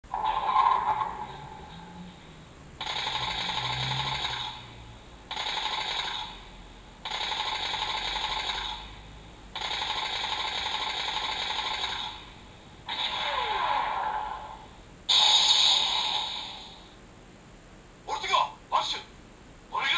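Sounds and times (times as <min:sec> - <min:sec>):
alarm clock whirring rattle: 0:00.1 - 0:02.2, 0:02.8 - 0:09.0, 0:09.6 - 0:12.4.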